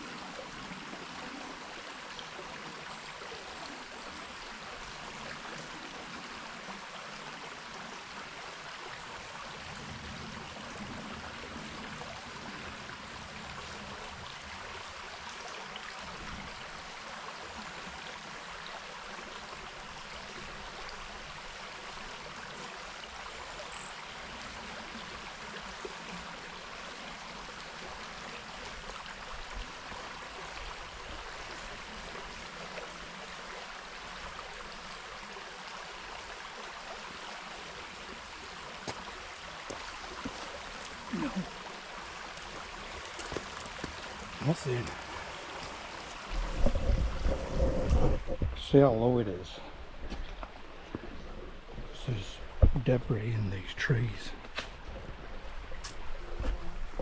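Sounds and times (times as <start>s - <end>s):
river water flowing: 0.0s - 57.0s.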